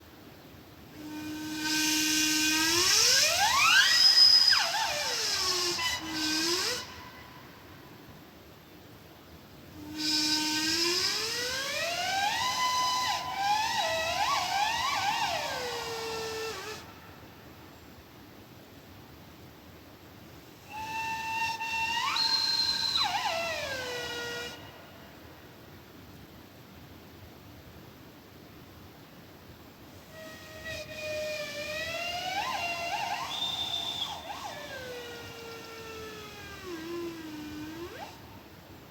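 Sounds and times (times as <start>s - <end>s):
faint steady hiss: 0.0s - 38.9s
steam whistle blowing: 0.9s - 8.1s, 9.7s - 17.4s, 20.4s - 25.3s, 29.9s - 38.8s.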